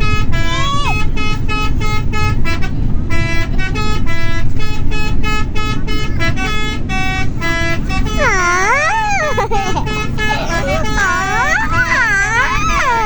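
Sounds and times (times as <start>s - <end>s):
musical bus air horn: 0.0s - 13.0s.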